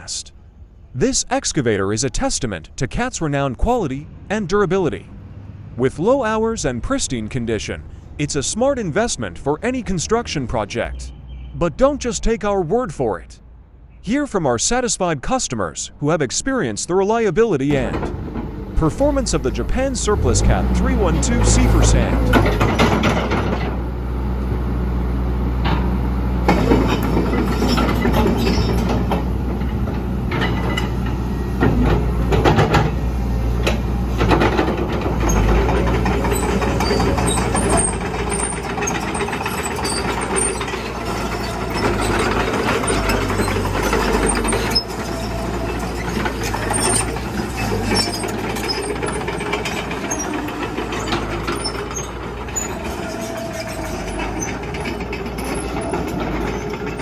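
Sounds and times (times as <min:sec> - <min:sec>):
metallic knocks and clanks: 0:17.7 - 0:23.8, 0:25.6 - 0:57.0
excavator diesel engine: 0:17.7 - 0:57.0.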